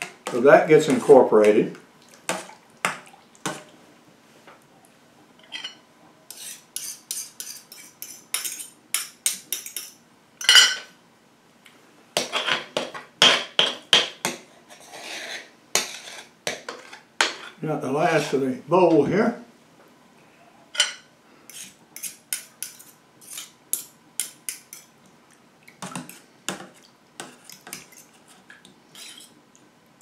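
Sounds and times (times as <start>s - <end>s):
utensil scraping pot: 5.5s - 9.9s, 12.2s - 13.7s, 14.5s - 17.6s, 20.8s - 24.9s, 27.2s - 29.4s.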